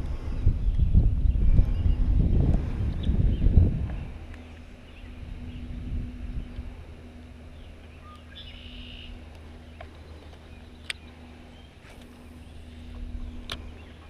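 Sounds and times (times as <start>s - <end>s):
low steady hum: 0.0s - 14.0s
faint bird chirps: 7.6s - 9.9s.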